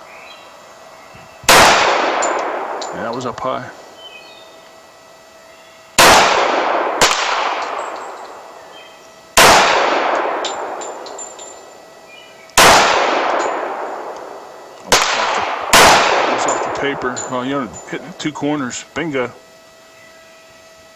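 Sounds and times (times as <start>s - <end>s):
pistol shots echoing: 1.5s - 3.1s, 6.0s - 8.5s, 9.4s - 11.1s, 12.6s - 17.3s.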